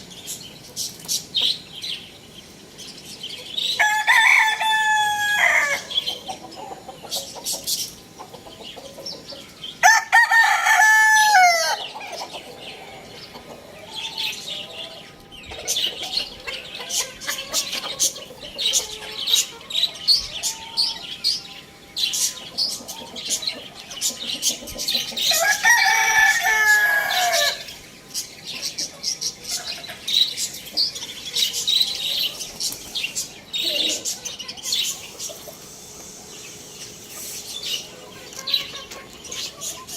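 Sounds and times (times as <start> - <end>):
chickens clucking: 0.0 - 39.9
rooster crowing: 3.8 - 6.1, 9.8 - 12.0, 18.8 - 21.5, 25.2 - 27.7.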